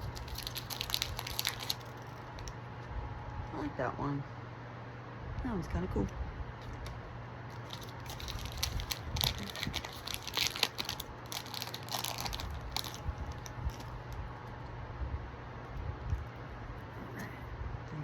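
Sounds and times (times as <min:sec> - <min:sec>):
foil wrapper crinkling and tearing: 0:00.0 - 0:02.6, 0:06.6 - 0:14.5.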